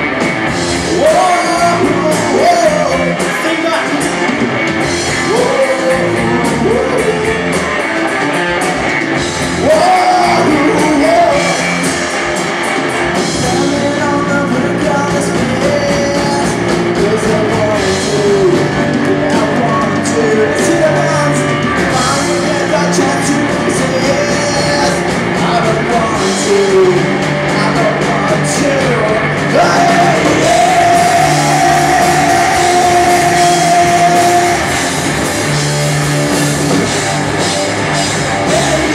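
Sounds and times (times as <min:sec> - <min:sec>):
rock band playing live: 0:00.0 - 0:38.9
person singing: 0:00.8 - 0:04.2, 0:05.2 - 0:07.8, 0:09.6 - 0:11.8, 0:13.3 - 0:35.0, 0:38.3 - 0:38.9.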